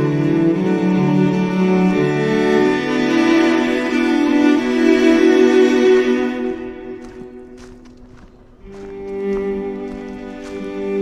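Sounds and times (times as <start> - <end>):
slow bowed strings: 0.0 - 11.0.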